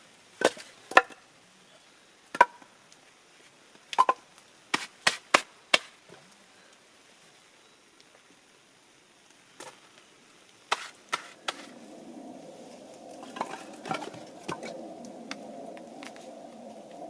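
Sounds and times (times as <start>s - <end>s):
wood being chopped: 2.3s - 2.6s, 4.0s - 6.0s, 10.7s - 11.7s
low rushing noise with crackles: 5.5s - 17.0s.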